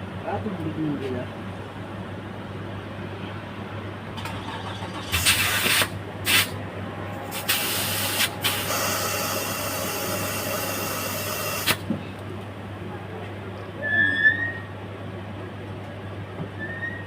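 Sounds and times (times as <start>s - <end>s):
compressed air hissing: 4.8s - 6.6s, 7.2s - 11.9s.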